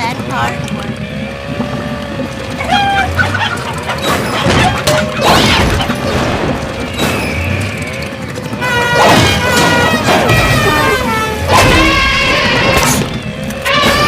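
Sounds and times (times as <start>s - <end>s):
music: 0.0s - 14.0s
cartoon crash sound effects: 8.9s - 14.0s.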